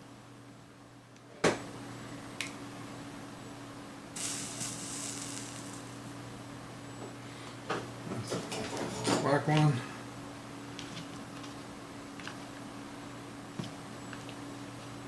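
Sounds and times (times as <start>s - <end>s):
steady low hum: 0.0s - 15.0s
soldering iron sizzling: 4.2s - 6.5s.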